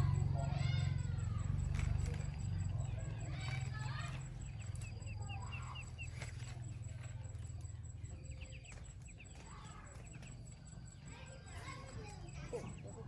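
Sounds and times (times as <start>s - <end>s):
bird chirping: 0.0s - 13.0s
steady low hum: 0.0s - 13.0s.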